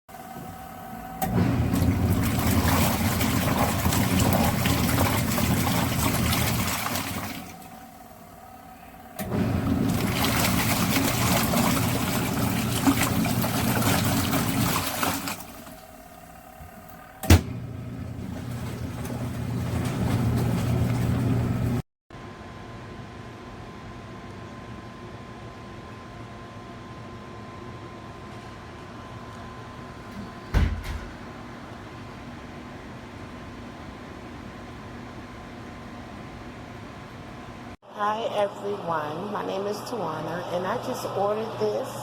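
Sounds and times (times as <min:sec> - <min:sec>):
washing machine motor hum: 0:00.1 - 0:21.8, 0:24.3 - 0:42.0
water churning: 0:01.3 - 0:08.5, 0:09.2 - 0:21.8.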